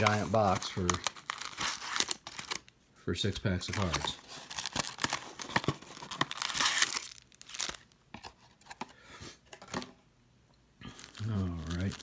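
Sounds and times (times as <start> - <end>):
packaging being torn open: 0.0 - 2.7, 3.7 - 8.0, 11.0 - 12.0
packaging rustling and clicking: 0.0 - 2.7, 3.7 - 8.9.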